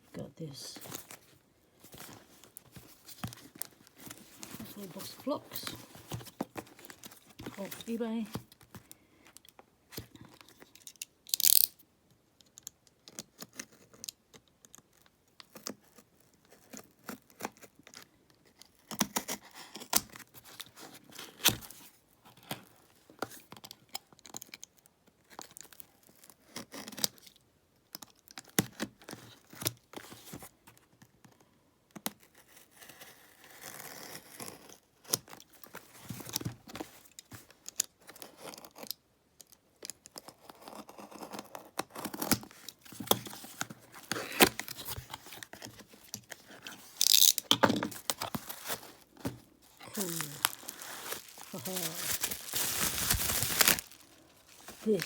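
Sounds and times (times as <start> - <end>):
packing material rustling: 0.4 - 8.8, 42.1 - 55.0
cardboard tearing: 40.6 - 55.0
tape ripping: 42.0 - 55.0.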